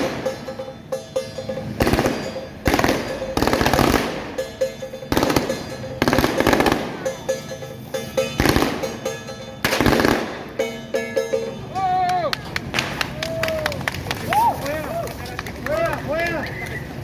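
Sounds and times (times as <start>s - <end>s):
firecrackers bursting: 1.8s - 7.3s, 8.2s - 10.7s, 12.4s - 14.8s.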